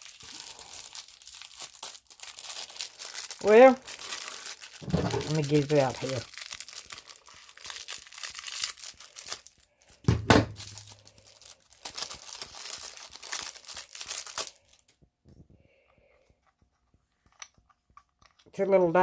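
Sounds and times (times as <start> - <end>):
packaging crinkling and tearing: 0.0 - 15.0.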